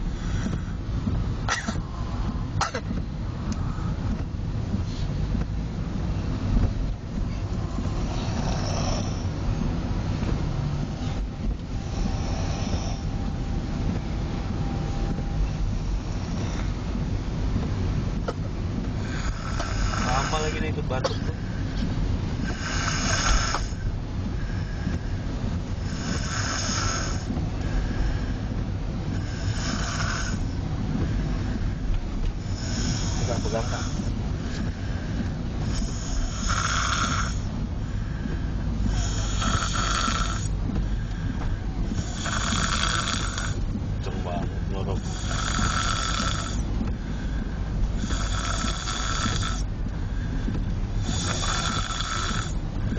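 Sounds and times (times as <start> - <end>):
steady low rumble: 0.0 - 52.9
breathy snoring: 7.6 - 9.4, 11.8 - 13.3, 19.0 - 21.5, 22.4 - 25.1, 25.8 - 28.4, 29.1 - 30.6, 32.4 - 52.9.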